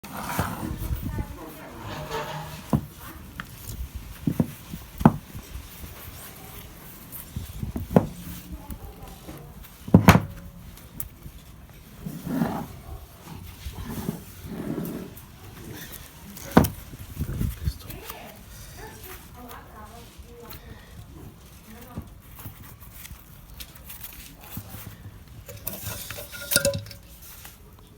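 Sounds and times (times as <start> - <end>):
metal parts knocking and clanking: 1.7 - 5.4, 25.4 - 27.2.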